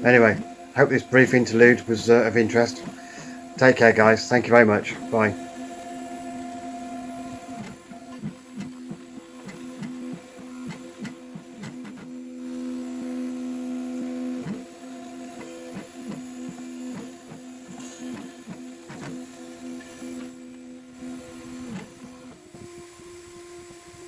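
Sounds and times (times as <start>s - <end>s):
router motor whine: 0.0s - 24.0s.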